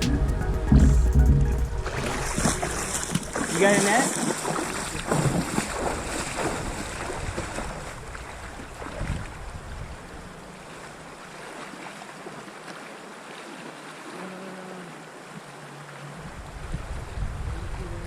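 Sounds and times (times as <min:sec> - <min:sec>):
river water flowing: 0:00.0 - 0:18.0
wind rumble on microphone: 0:04.8 - 0:10.4, 0:16.2 - 0:18.0.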